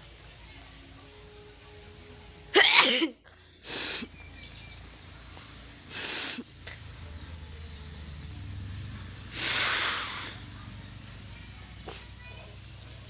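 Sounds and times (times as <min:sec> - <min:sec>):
air blown hard through nose: 0:02.6 - 0:04.1, 0:05.9 - 0:06.5, 0:09.3 - 0:10.6.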